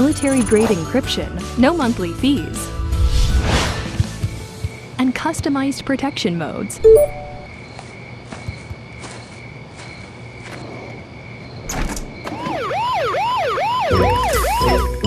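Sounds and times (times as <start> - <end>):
alarm siren whooping: 12.3 - 15.0.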